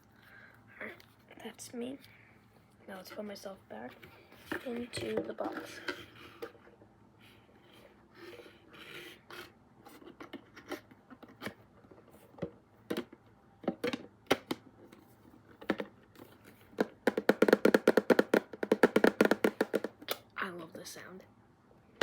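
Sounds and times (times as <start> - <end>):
fast taps: 16.8 - 20.1.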